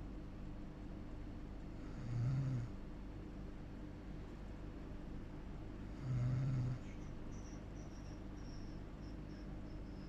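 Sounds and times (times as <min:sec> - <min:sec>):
steady low hum: 0:00.0 - 0:10.0
person snoring: 0:01.8 - 0:02.7, 0:05.9 - 0:06.8.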